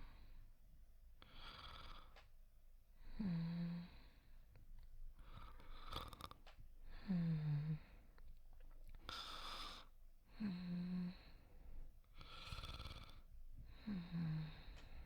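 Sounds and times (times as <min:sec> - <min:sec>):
person snoring softly: 0:01.2 - 0:02.2, 0:03.1 - 0:04.3, 0:05.2 - 0:08.0, 0:09.1 - 0:11.4, 0:12.2 - 0:15.0.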